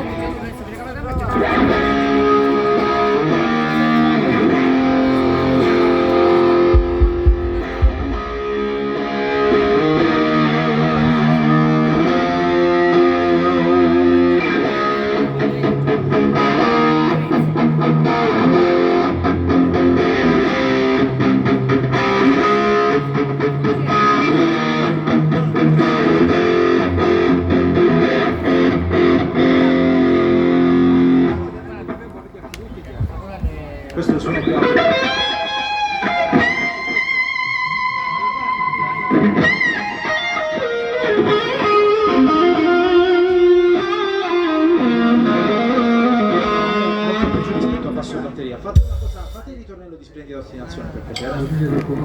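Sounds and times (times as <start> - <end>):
electric guitar chords: 1.3 - 31.6, 34.6 - 50.2
deep low thumps: 6.6 - 8.8, 48.8 - 50.6.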